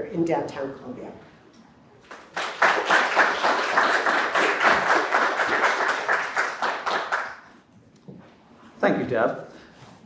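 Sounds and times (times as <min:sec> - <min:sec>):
audience applauding: 0:02.0 - 0:07.5.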